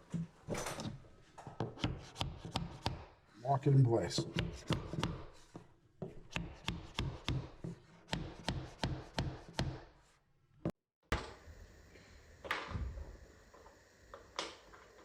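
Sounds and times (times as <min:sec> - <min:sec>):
hammer knocking on wooden block: 0:06.3 - 0:09.8.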